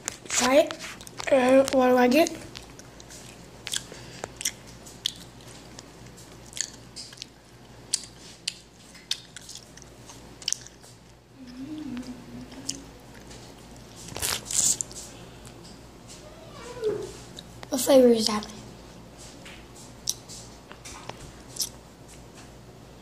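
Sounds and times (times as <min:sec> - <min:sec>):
candy chewing close up: 0:00.2 - 0:11.0, 0:12.5 - 0:15.0.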